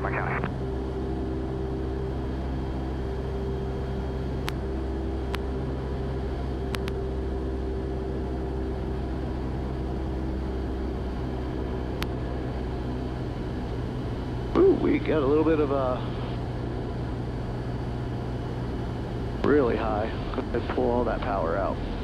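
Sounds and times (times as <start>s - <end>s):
propeller plane engine droning: 0.0s - 22.0s
faint sharp clicks: 6.7s - 7.0s.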